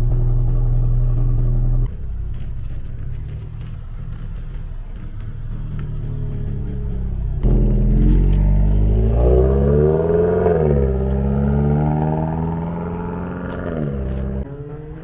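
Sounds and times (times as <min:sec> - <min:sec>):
car exhaust accelerating past: 0:00.0 - 0:15.0.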